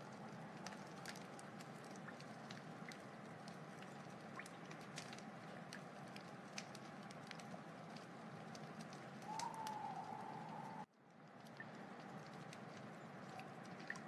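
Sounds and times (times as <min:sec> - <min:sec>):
wood fire crackling: 0:00.0 - 0:14.0
thin whistling tone: 0:09.2 - 0:10.9.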